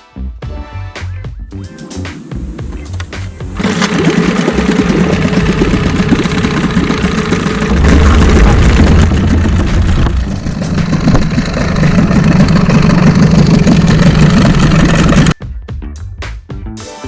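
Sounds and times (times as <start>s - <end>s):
boat engine running: 2.2s - 15.4s.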